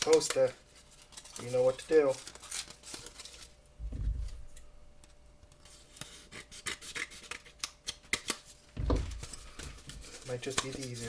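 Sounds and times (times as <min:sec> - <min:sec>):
soft thump: 0:03.8 - 0:04.6, 0:08.8 - 0:09.2.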